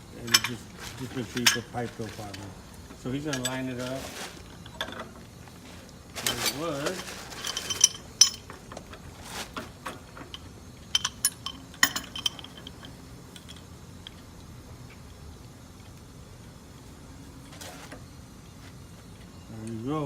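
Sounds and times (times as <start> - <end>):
metal tools clinking: 0.2 - 2.4, 3.0 - 5.0, 6.2 - 8.6, 10.2 - 13.7.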